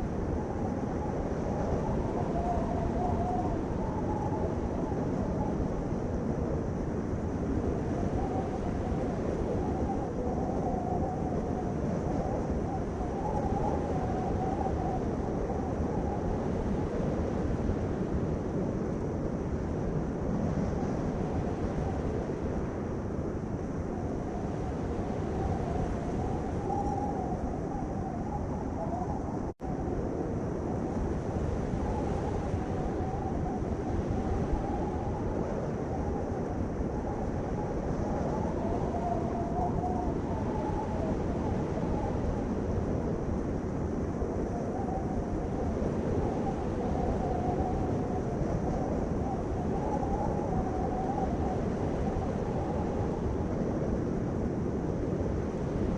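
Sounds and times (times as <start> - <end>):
faint wavering whine: 0.0 - 55.9.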